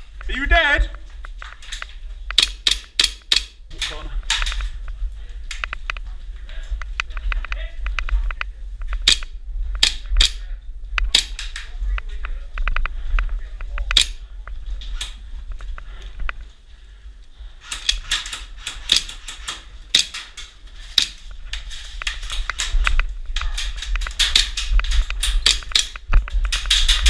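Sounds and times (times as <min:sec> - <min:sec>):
low rumble: 0:03.5 - 0:17.6, 0:20.6 - 0:27.0.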